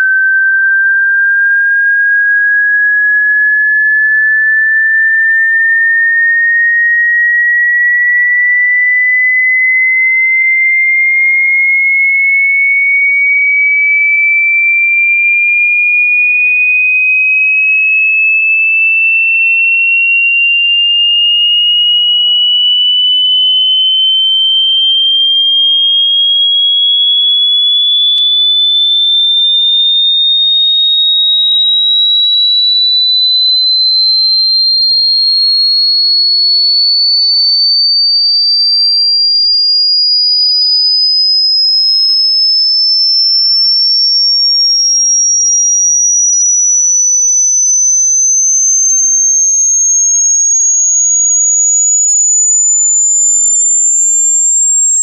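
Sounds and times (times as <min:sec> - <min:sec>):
rising sine-wave tone sweep: 0:20.2 - 0:55.0.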